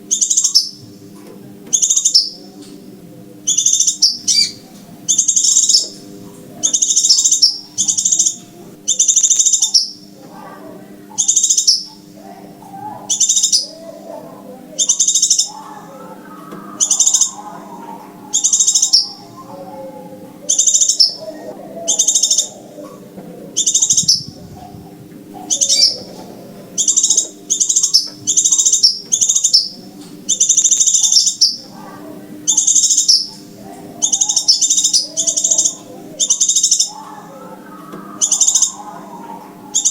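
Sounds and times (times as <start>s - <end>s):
faint low hum: 0.0s - 39.9s
bird chirping bursts: 0.1s - 0.8s, 3.5s - 6.0s, 6.6s - 10.0s, 11.2s - 12.1s, 13.1s - 13.7s, 14.8s - 19.5s, 23.6s - 31.7s, 32.5s - 39.9s.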